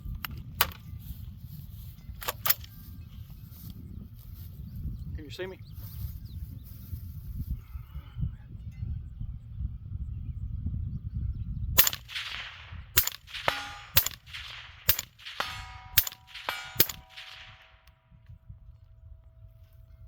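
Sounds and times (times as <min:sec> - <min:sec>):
suppressed rifle shots: 0:11.8 - 0:17.9.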